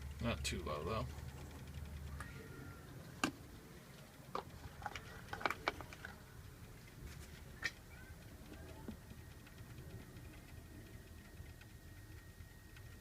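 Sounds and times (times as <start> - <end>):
light clicks and taps: 3.0 - 13.0.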